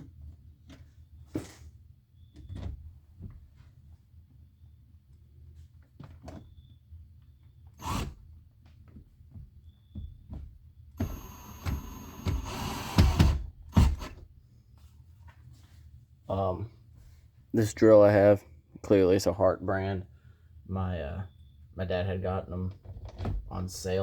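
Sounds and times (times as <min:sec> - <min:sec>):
cordless drill whining: 0:07.8 - 0:08.2, 0:11.0 - 0:14.2.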